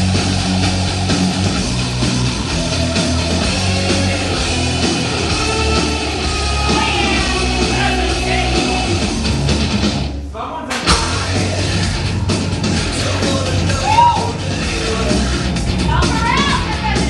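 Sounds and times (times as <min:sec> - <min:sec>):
heavy rock music: 0:00.0 - 0:10.2, 0:10.8 - 0:17.0
person singing: 0:03.5 - 0:08.9, 0:12.8 - 0:16.7.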